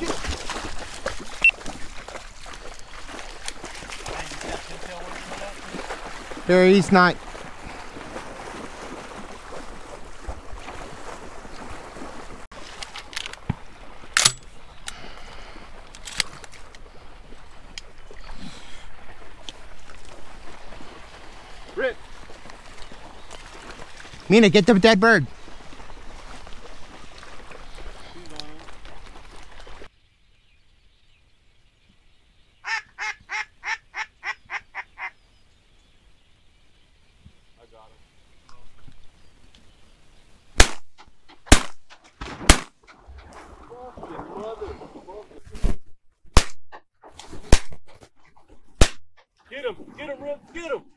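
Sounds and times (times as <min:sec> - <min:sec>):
water sloshing and splashing: 0:00.0 - 0:29.9, 0:42.1 - 0:45.6
duck quacking: 0:32.6 - 0:35.1.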